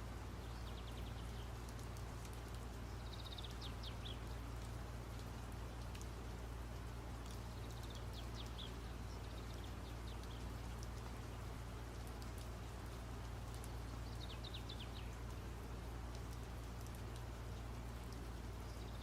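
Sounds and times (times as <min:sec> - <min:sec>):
faint low hum and hiss: 0:00.0 - 0:19.0.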